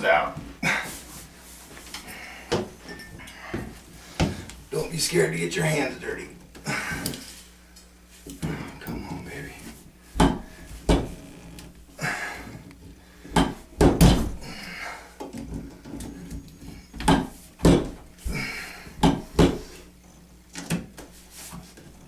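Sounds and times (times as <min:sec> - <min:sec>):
metal knocks and clanks: 0:13.3 - 0:14.6.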